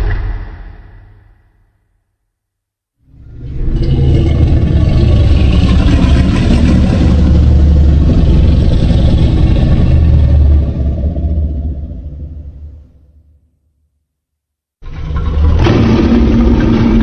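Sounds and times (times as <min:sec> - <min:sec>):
deep bass rumbling: 0:03.1 - 0:13.1, 0:15.0 - 0:17.0.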